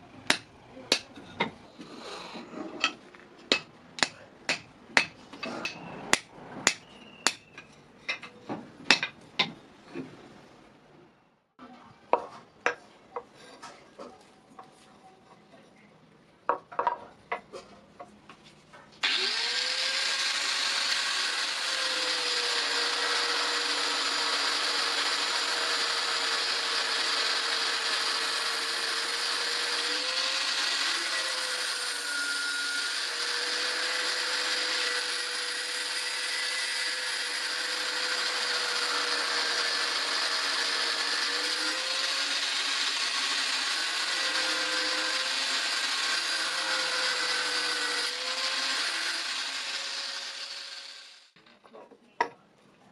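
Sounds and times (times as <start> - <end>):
power grinder on metal: 19.0 - 51.4.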